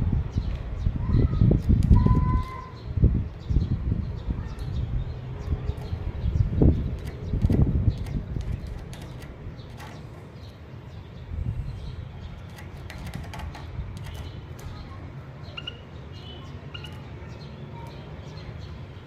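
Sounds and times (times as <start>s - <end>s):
short high bird chirps: 2.0s - 2.8s.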